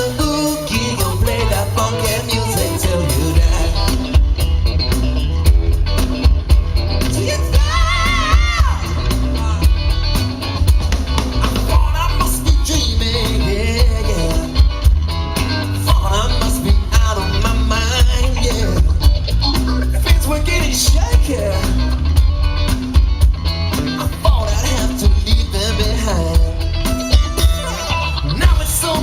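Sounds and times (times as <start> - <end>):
person singing: 0.0 - 4.4, 7.0 - 10.0, 11.4 - 14.7
live rock band playing: 0.0 - 29.0.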